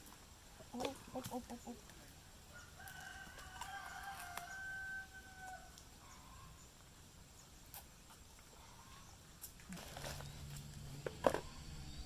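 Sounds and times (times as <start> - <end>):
rooster crowing: 2.5 - 5.8.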